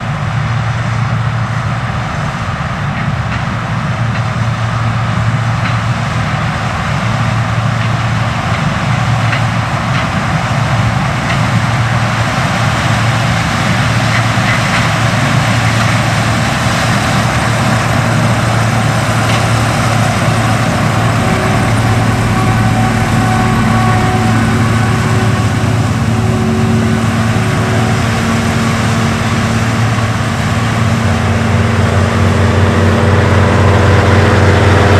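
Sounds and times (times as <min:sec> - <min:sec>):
combine harvester engine drone: 0:00.0 - 0:34.9
threshing machinery whirring: 0:07.8 - 0:34.9
steady higher hum: 0:10.5 - 0:34.9.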